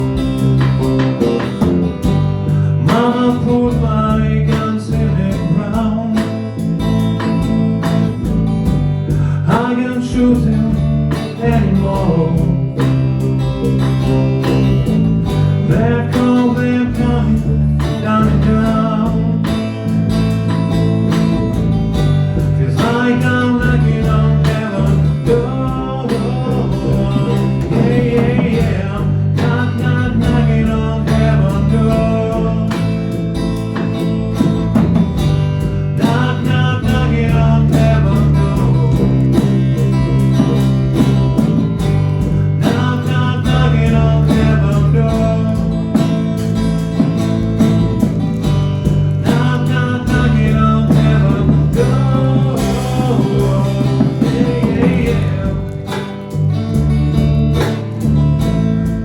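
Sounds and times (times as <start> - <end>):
bass line: 0.0 - 59.0
guitar: 0.0 - 59.0
person singing: 2.5 - 6.4, 9.2 - 12.9, 15.6 - 19.7, 22.4 - 33.2, 35.9 - 40.6, 42.4 - 46.2, 49.1 - 56.3.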